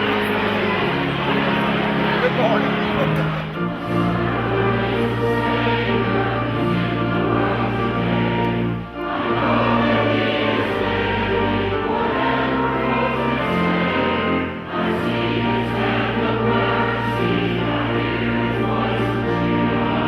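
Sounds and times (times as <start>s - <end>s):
choir singing: 0.0s - 20.0s
instrumental accompaniment: 0.0s - 20.0s.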